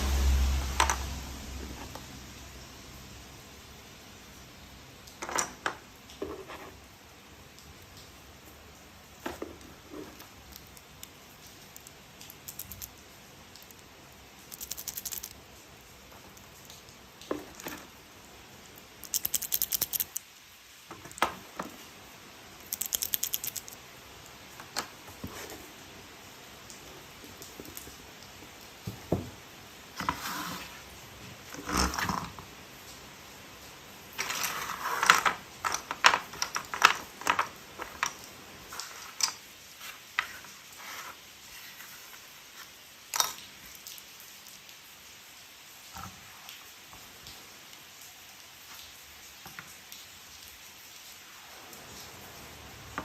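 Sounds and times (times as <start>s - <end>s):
plastic toy parts clattering: 9.3s - 13.0s, 14.5s - 15.4s, 18.9s - 20.2s, 22.6s - 23.8s, 34.2s - 39.5s
rapid ratchet clicking: 14.5s - 15.3s, 19.0s - 20.2s, 22.6s - 23.8s.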